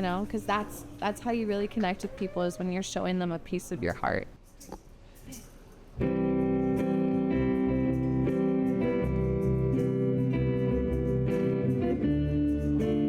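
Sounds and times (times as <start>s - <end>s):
strummed guitar chords: 6.0s - 13.0s.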